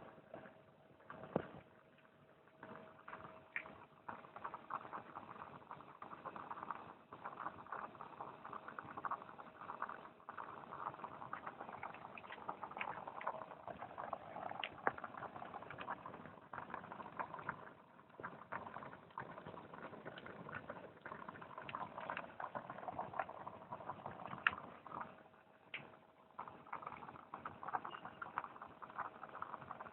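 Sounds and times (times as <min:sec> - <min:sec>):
food bubbling and crackling: 0:00.0 - 0:29.9
small sharp pops: 0:25.7 - 0:26.0.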